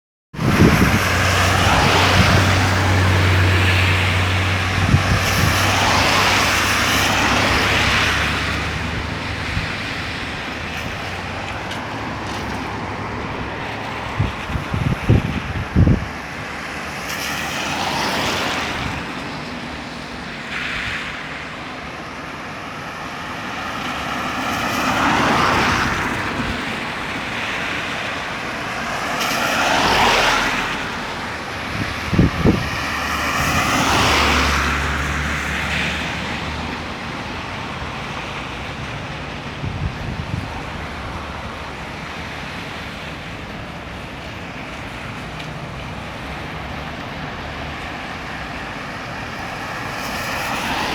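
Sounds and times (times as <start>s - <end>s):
road noise: 0.3s - 50.9s
vehicles passing: 0.4s - 50.9s.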